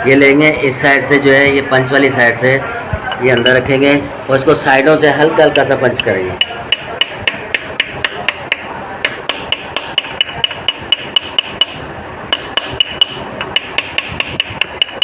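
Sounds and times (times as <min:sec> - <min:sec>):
hammer tapping metal punch: 0:06.0 - 0:15.0.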